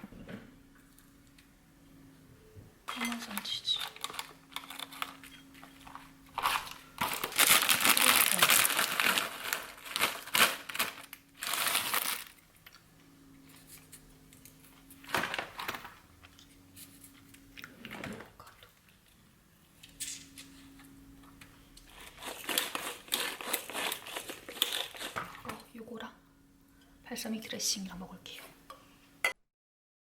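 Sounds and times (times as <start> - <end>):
plastic packaging crinkling: 2.9 - 12.8, 14.9 - 16.4, 21.8 - 25.6.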